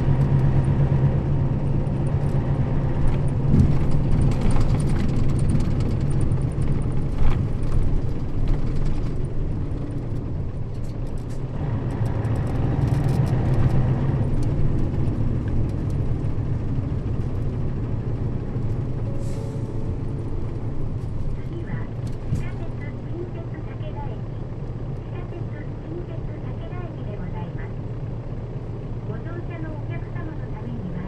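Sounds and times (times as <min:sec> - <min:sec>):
bus diesel engine drone: 0:00.0 - 0:31.0
road noise: 0:00.0 - 0:31.0
light rattles: 0:03.0 - 0:22.6.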